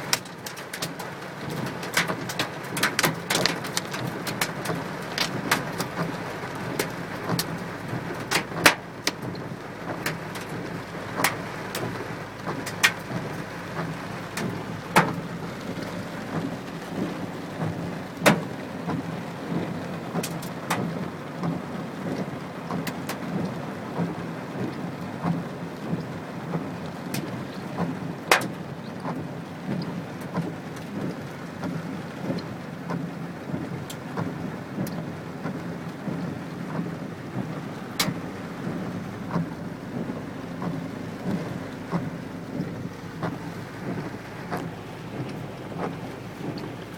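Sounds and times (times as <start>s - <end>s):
hailstones striking: 0.0s - 7.6s
heavy rain on a car: 0.0s - 46.9s.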